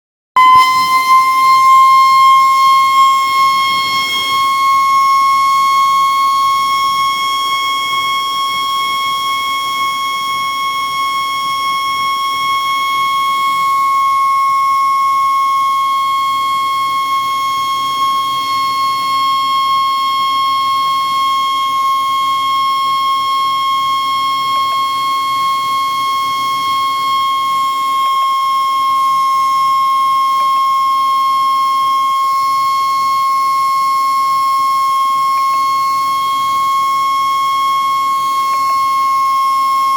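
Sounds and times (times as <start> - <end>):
fire alarm steady tone: 0.4 - 39.9.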